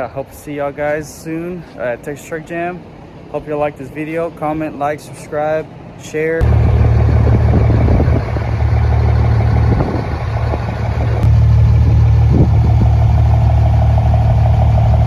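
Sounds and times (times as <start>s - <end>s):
truck engine running: 6.4s - 15.0s.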